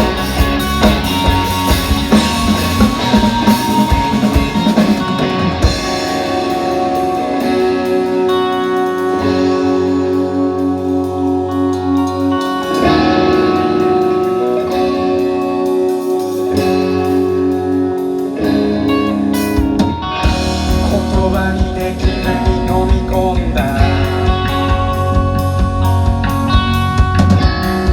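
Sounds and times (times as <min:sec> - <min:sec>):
drum kit hits: 0:00.0 - 0:08.3, 0:19.4 - 0:27.9
bass: 0:00.0 - 0:27.9
guitar chords: 0:00.0 - 0:27.9.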